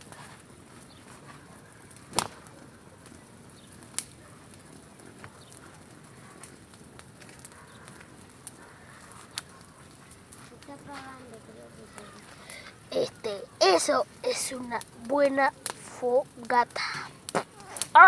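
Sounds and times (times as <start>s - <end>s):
bonfire crackling and popping: 0.0s - 18.0s.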